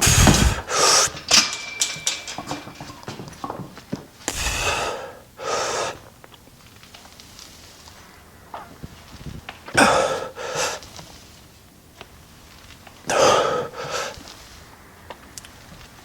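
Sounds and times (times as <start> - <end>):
man breathing hard: 0.0 - 1.2, 4.3 - 6.1, 9.8 - 10.9, 13.1 - 14.3.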